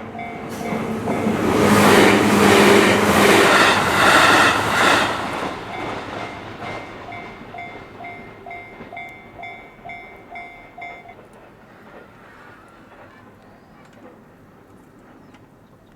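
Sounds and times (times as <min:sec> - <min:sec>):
crossing warning bell: 0:00.0 - 0:11.6
train rumble: 0:00.0 - 0:15.8.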